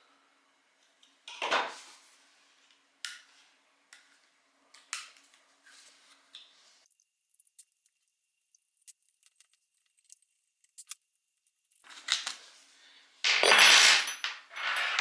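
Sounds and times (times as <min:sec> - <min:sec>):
metal parts scraping: 0:13.3 - 0:15.0.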